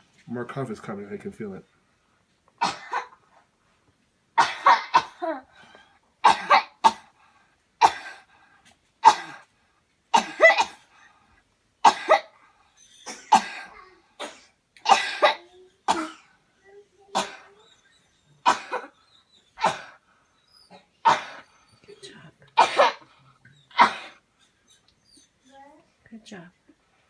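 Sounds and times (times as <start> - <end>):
person coughing: 2.6 - 3.2, 4.4 - 5.4, 6.2 - 7.1, 10.2 - 10.9, 11.9 - 12.3, 13.1 - 16.3, 17.1 - 17.6, 18.4 - 19.0, 22.6 - 23.1, 23.7 - 24.2.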